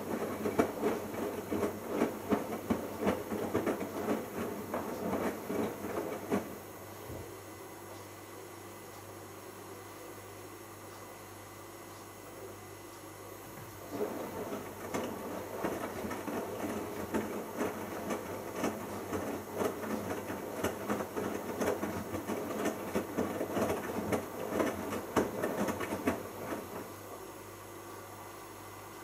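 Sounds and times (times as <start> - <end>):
washing machine drum tumbling laundry: 0.0 - 7.3, 13.7 - 27.2.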